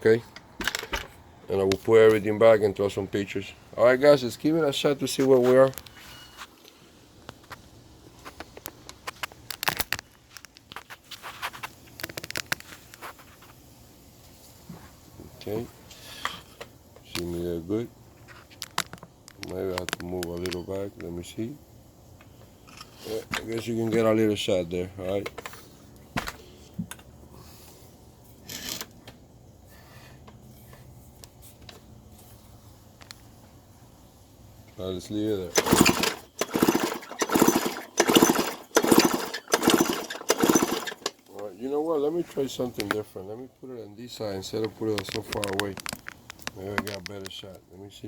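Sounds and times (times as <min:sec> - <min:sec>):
hands handling small parts and tools: 0:05.1 - 0:13.6, 0:18.2 - 0:20.7, 0:22.1 - 0:24.1, 0:44.6 - 0:47.4.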